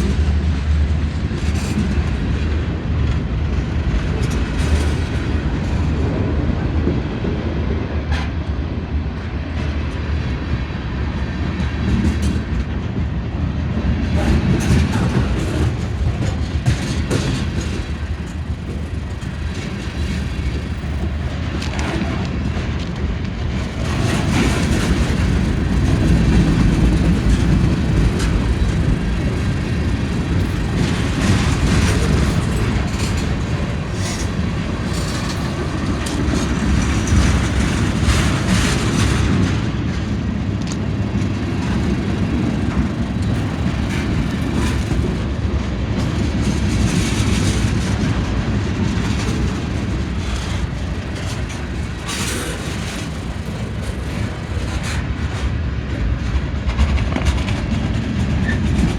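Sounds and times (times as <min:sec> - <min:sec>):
train rumbling past: 0:00.0 - 0:58.9
wheels clattering over rails: 0:14.0 - 0:58.9.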